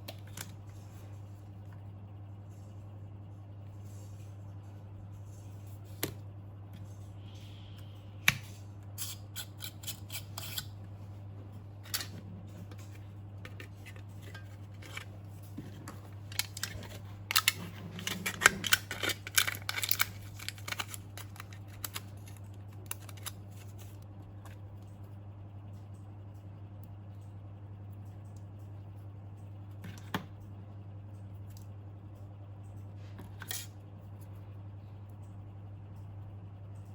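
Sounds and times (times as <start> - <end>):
steady low hum: 0.0 - 36.9.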